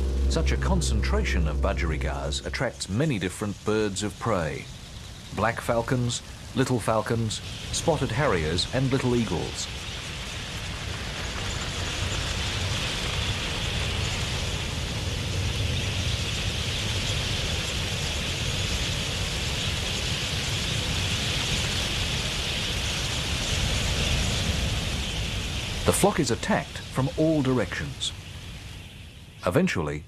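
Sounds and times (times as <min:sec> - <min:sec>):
low rumble: 0:00.0 - 0:04.8.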